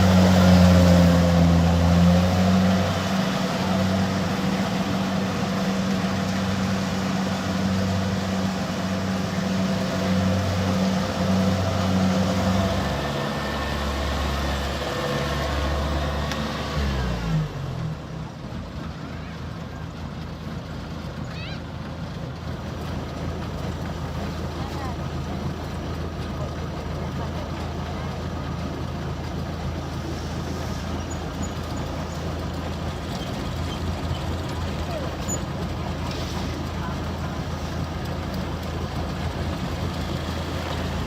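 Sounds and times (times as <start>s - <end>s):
heavy engine humming: 0.0s - 41.0s.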